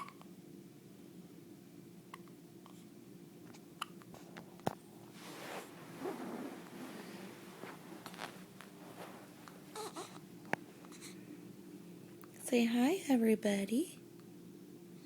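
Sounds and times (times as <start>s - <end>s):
rustling: 4.2s - 11.0s.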